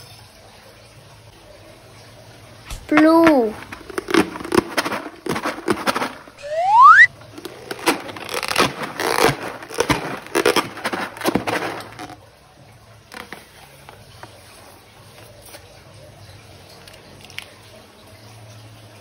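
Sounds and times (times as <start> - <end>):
slime squishing and scraping: 2.7 - 12.2
rubber squeal: 3.5 - 12.2.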